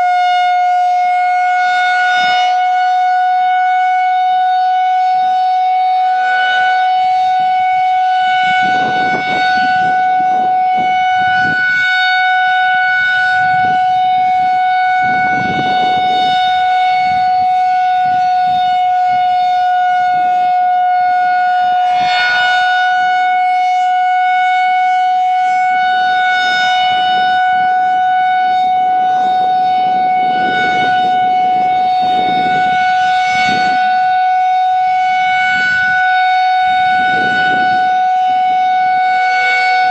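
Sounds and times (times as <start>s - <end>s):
rotating warning siren steady tone: 0.0s - 39.9s.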